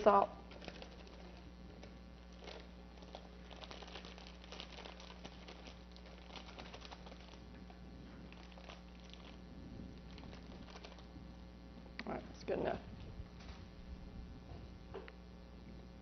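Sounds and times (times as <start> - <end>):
grains crackling in hot pan: 0.0 - 11.7
low electrical hum: 0.0 - 16.0.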